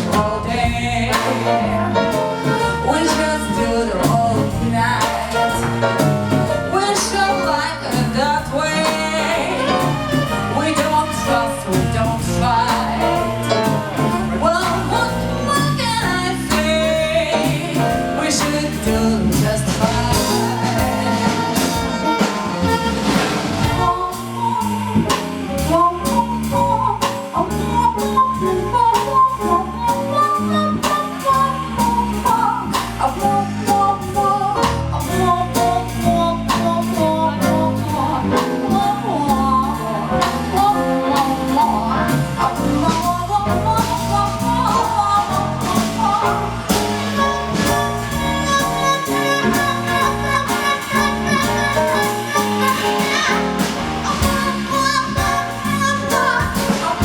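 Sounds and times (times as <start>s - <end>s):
melodic lead line: 0.0s - 24.5s, 39.5s - 57.0s
drum kit: 0.0s - 57.0s
walking bass: 0.0s - 57.0s.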